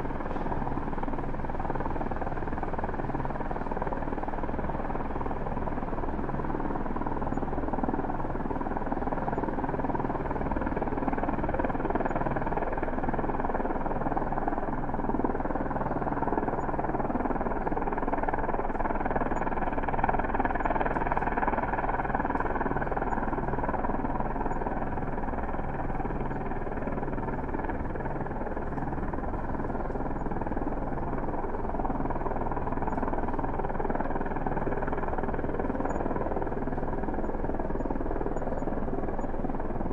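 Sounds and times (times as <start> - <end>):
distant helicopter hovering: 0.0 - 39.9.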